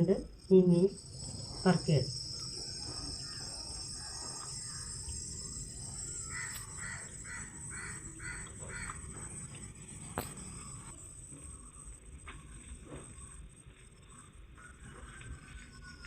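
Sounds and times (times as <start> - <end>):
insects trilling: 0.0 - 16.0
crow cawing: 6.0 - 9.6.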